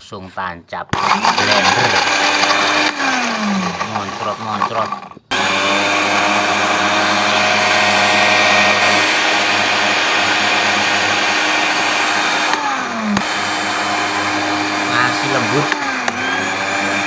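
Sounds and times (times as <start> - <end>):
blender motor whine: 0.9 - 17.0
blender click: 1.0 - 17.0
liquid churning: 1.0 - 17.0.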